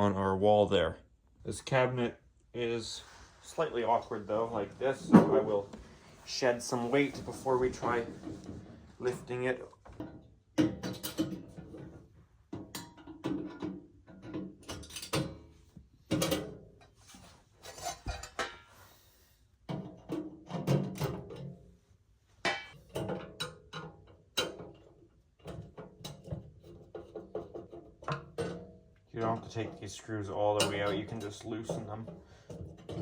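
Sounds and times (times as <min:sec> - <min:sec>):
sheet metal clanks and thunks: 0:04.9 - 0:05.8.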